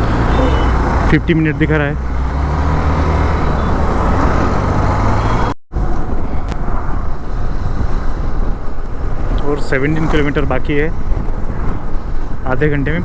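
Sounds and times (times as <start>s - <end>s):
motorcycle engine rumble: 0.0s - 12.5s
wind and road noise: 0.0s - 13.0s.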